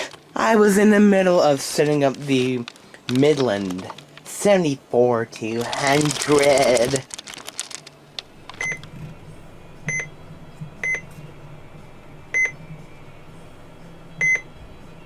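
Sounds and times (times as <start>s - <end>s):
low steady hum: 8.0s - 15.0s
short high button beeps: 14.2s - 14.4s.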